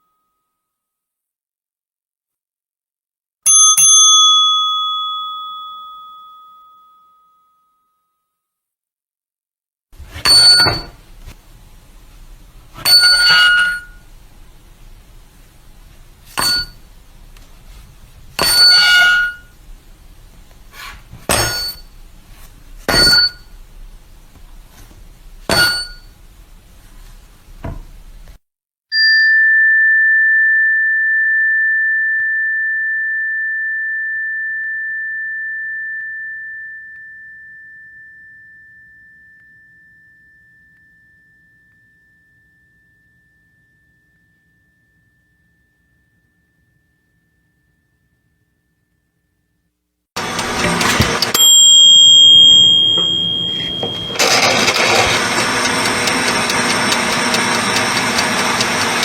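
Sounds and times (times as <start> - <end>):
ringing pure-tone ding: 3.5 - 8.3, 10.3 - 11.0, 12.8 - 14.0, 16.4 - 16.8, 21.4 - 21.9, 22.9 - 23.5, 25.5 - 26.2, 28.9 - 49.0, 51.2 - 54.6
short metallic dings: 10.1 - 11.0, 12.8 - 14.0, 16.3 - 16.8, 18.4 - 19.5, 21.3 - 21.9, 22.9 - 23.5, 25.5 - 26.2, 50.2 - 59.0.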